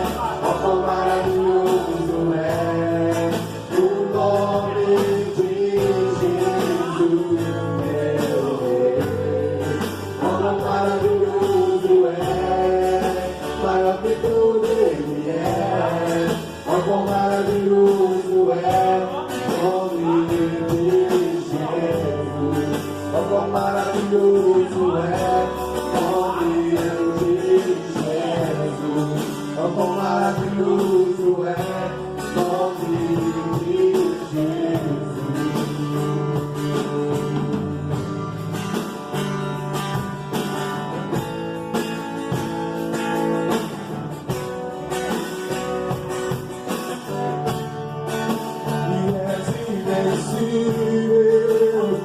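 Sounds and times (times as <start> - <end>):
person singing: 0.0 - 38.0, 48.6 - 52.0
band playing with plucked strings: 0.0 - 52.0.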